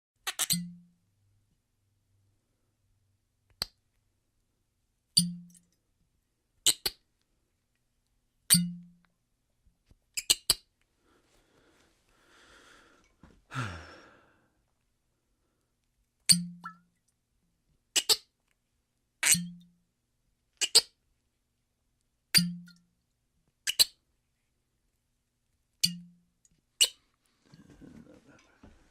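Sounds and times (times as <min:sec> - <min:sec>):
soft rustle: 0:11.0 - 0:12.2.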